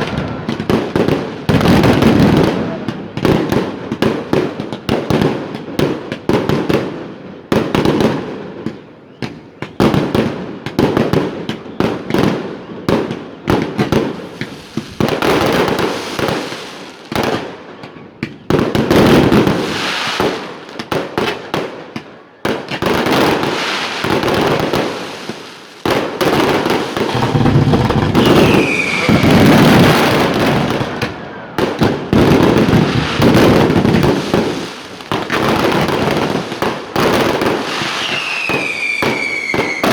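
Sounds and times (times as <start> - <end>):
falling firework whistle: 27.0 - 34.4, 37.7 - 39.9.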